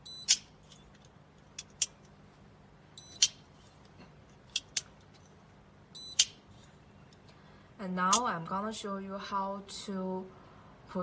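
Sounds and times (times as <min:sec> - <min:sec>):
padlock shackle clicking open: 0:01.5 - 0:02.1, 0:04.5 - 0:04.9
high electronic beep: 0:03.0 - 0:03.3, 0:06.0 - 0:06.3.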